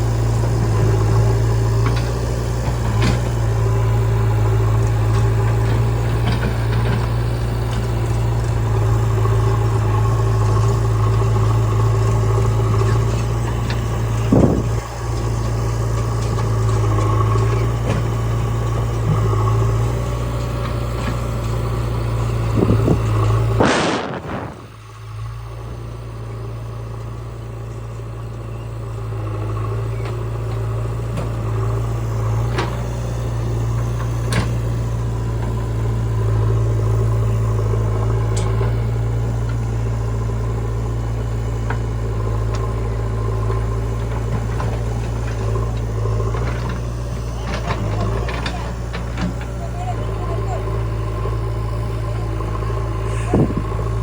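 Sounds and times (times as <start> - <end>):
diesel engine of heavy machinery: 0.0 - 54.0
loud rush: 23.5 - 24.8.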